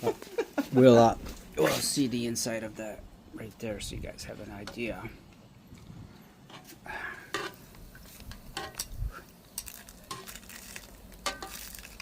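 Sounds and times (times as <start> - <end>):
crisp egg roll cracking: 8.3 - 12.0.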